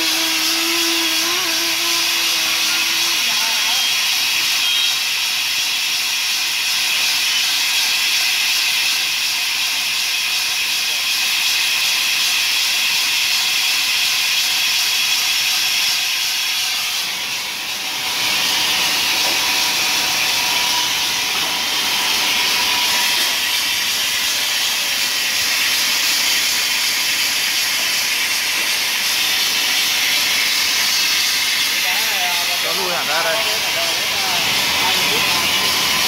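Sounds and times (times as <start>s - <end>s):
dry ice blasting hiss: 0.0s - 36.0s.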